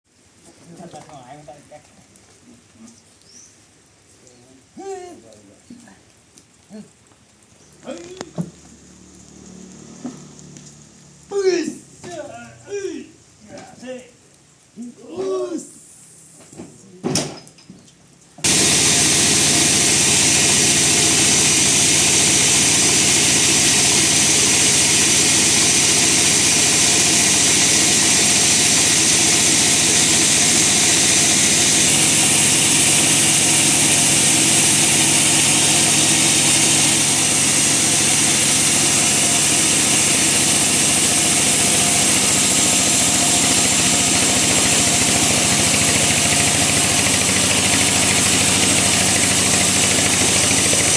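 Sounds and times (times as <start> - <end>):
bandsaw sawing log: 18.4 - 50.9.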